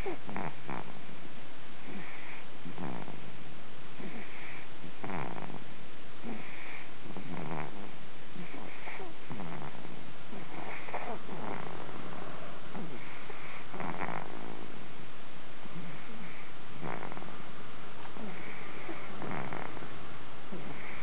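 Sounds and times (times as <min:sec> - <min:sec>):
animal breathing noisily: 0:04.0 - 0:05.4, 0:08.4 - 0:14.7, 0:18.1 - 0:19.9, 0:20.5 - 0:21.0.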